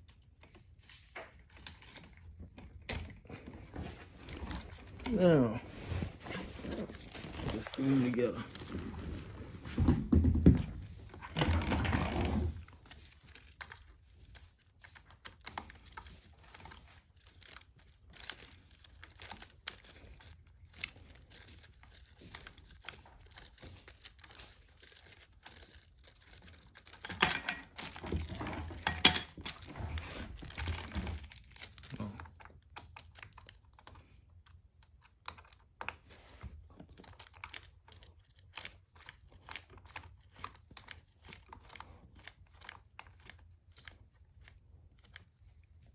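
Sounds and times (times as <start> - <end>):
rustling and clattering: 0.3 - 15.0, 15.7 - 32.0.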